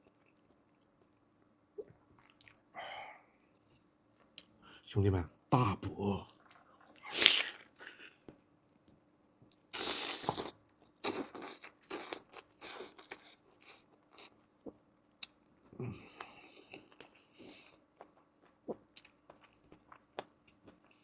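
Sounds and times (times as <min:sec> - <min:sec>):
person chewing: 0:06.3 - 0:08.3, 0:09.5 - 0:21.0.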